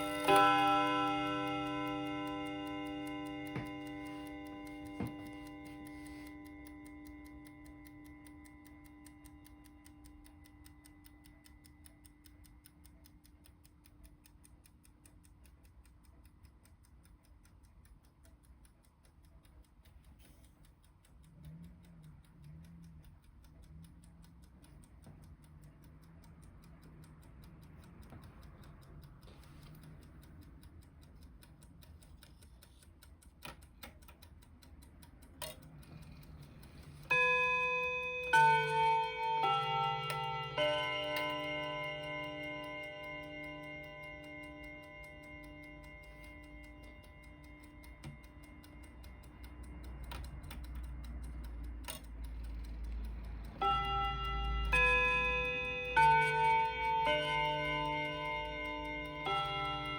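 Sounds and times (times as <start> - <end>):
clock chime ringing: 0.0 - 9.7, 37.0 - 48.7, 53.5 - 59.9
clock ticking: 0.0 - 59.9.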